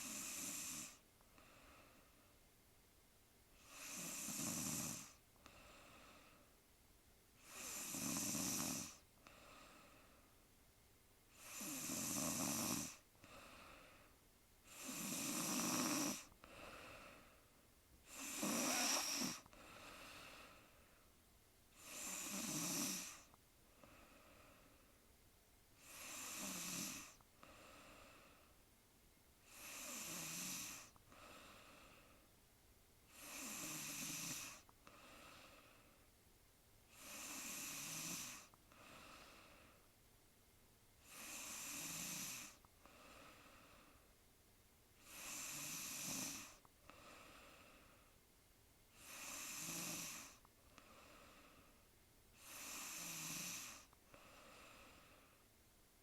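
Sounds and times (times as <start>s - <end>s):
woman snoring: 0.0s - 1.0s, 3.6s - 5.2s, 7.4s - 9.8s, 11.3s - 13.7s, 14.7s - 17.2s, 18.1s - 20.6s, 21.7s - 24.2s, 25.8s - 28.3s, 29.4s - 32.2s, 33.1s - 35.7s, 36.9s - 39.7s, 41.0s - 44.0s, 45.0s - 47.9s, 48.9s - 51.7s, 52.4s - 55.4s
faint breathing: 0.0s - 2.5s, 3.6s - 6.6s, 8.6s - 10.5s, 11.3s - 25.1s, 25.8s - 28.7s, 29.4s - 32.4s, 33.1s - 36.2s, 36.9s - 40.0s, 41.0s - 44.2s, 45.0s - 48.3s, 48.9s - 55.6s.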